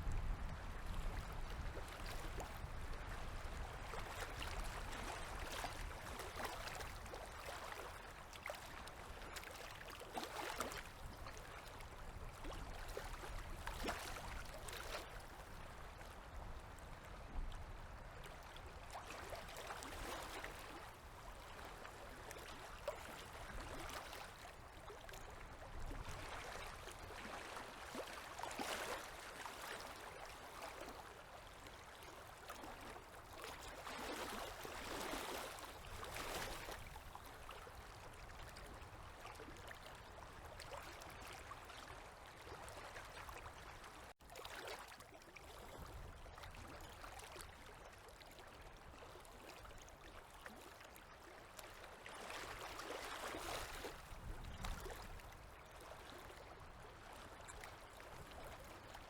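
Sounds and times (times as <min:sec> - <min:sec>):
river waves lapping: 0:03.3 - 0:16.0, 0:18.0 - 0:47.7, 0:50.4 - 0:59.0.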